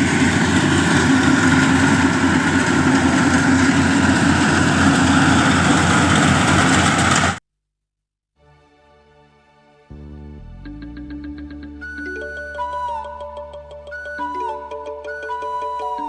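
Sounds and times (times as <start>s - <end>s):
combine harvester engine running: 0.0s - 7.4s.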